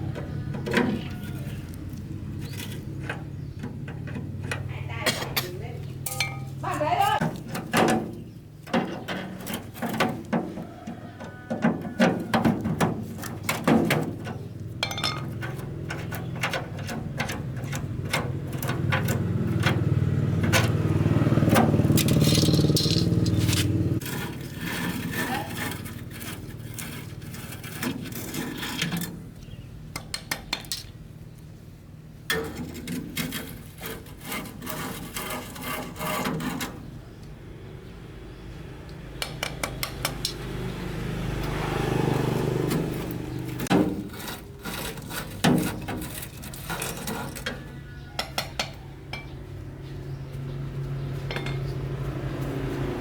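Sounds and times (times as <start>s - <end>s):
metal tools clinking and scraping: 4.0s - 10.4s, 11.2s - 19.8s, 21.5s - 29.6s, 42.6s - 49.4s, 51.2s - 51.9s.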